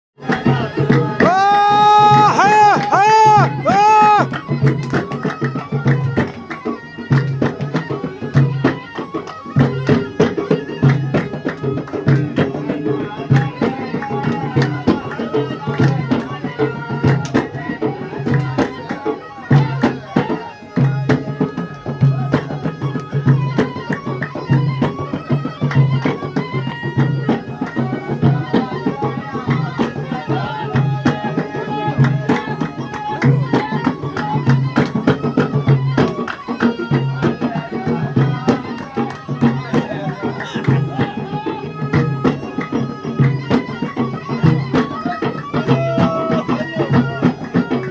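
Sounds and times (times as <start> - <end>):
hand drum beat: 0.2 - 17.5, 19.5 - 47.9.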